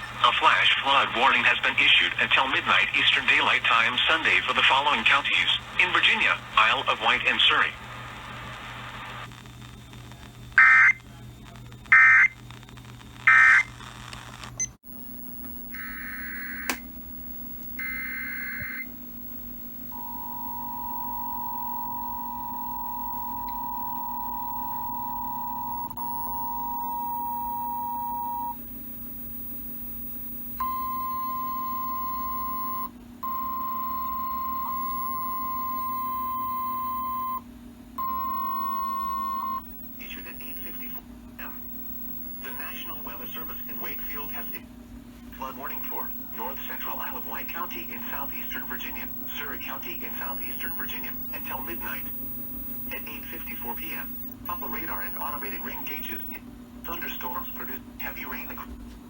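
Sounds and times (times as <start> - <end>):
screeching digital data bursts: 10.6 - 11.0, 11.9 - 12.4, 13.2 - 13.8
two-tone attention signal: 38.0 - 39.6.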